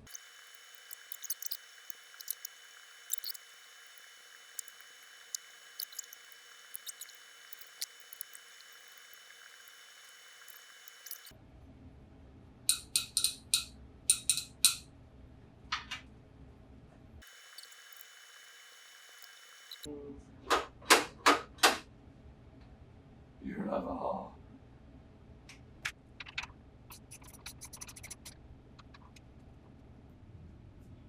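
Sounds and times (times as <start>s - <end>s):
ratchet clicking: 0.0s - 11.3s.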